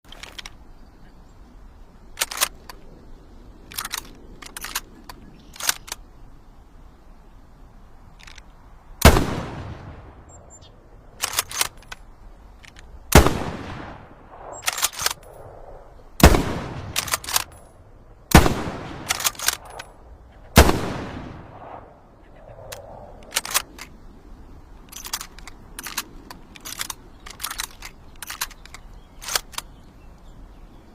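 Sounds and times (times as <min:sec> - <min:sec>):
rifle bolt metallic clicks: 0:00.1 - 0:00.6, 0:02.2 - 0:02.9, 0:03.6 - 0:06.1, 0:08.1 - 0:09.2, 0:11.2 - 0:13.8, 0:14.4 - 0:15.6, 0:16.3 - 0:20.0, 0:22.5 - 0:24.0, 0:24.8 - 0:29.8
rifle shots: 0:09.0 - 0:10.1, 0:13.1 - 0:15.2, 0:16.2 - 0:17.6, 0:18.3 - 0:19.8, 0:20.6 - 0:21.8.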